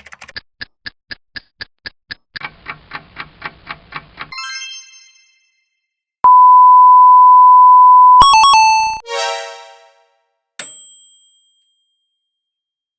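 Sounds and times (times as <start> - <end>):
steady electronic beep: 6.3 - 9.0.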